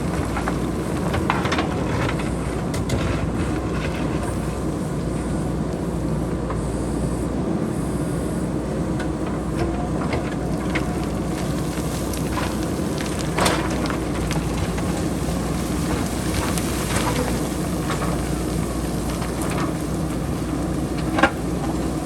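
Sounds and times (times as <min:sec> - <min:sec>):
rocks clattering down hillside: 0:00.0 - 0:05.0, 0:09.7 - 0:22.0
diesel engine running: 0:00.0 - 0:22.0.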